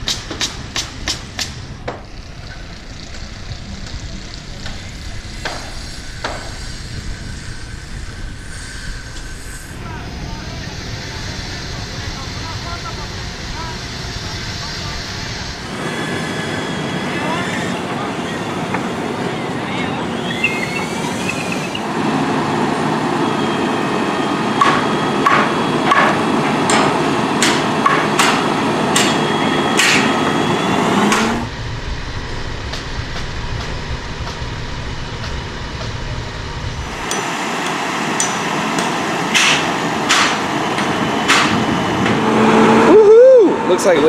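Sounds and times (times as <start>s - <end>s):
hammer strikes: 0.0s - 2.0s, 5.4s - 6.6s, 24.6s - 30.2s, 36.9s - 42.3s
low rumble: 31.4s - 37.0s.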